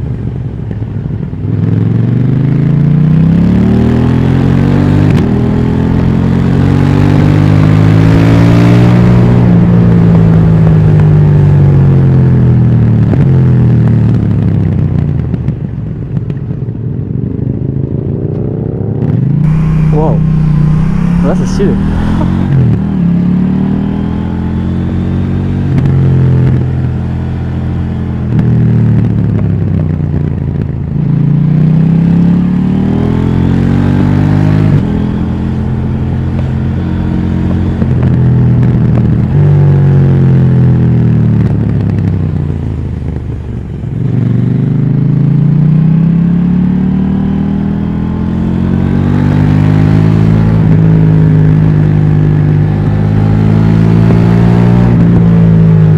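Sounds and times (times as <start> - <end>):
motorcycle engine revving: 19.4 - 28.4, 51.8 - 55.9.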